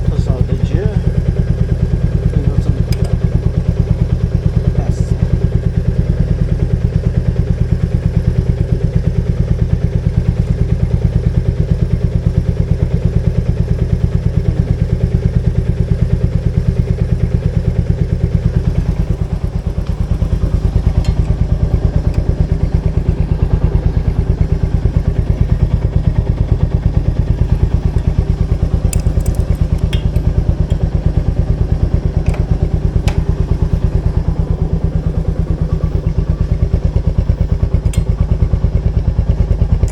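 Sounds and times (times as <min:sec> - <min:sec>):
motorcycle engine thumping: 0:00.0 - 0:39.9.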